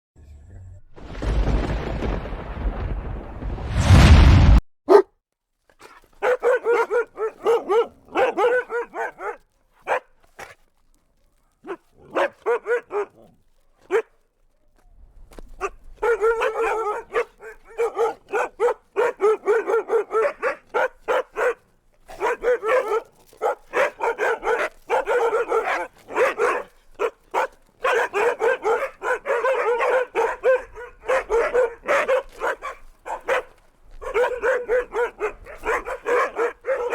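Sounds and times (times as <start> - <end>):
loud rushing rumble: 3.4 - 4.6
dogs barking and yipping: 4.9 - 5.1, 5.8 - 10.6, 11.6 - 14.1, 15.6 - 36.9.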